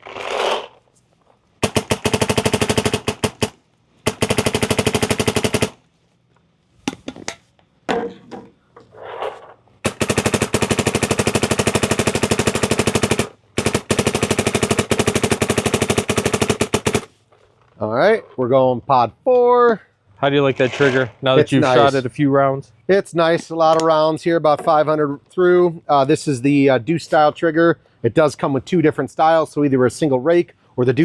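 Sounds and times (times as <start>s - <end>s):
paintball marker rapid shots: 1.6s - 5.8s, 9.9s - 17.1s.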